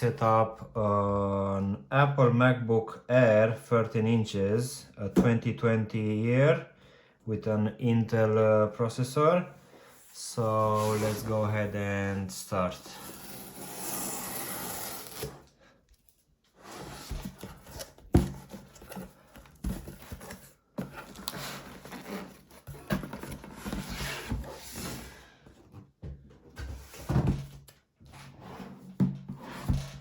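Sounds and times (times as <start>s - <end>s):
hands rubbing cardboard box: 10.7s - 11.4s.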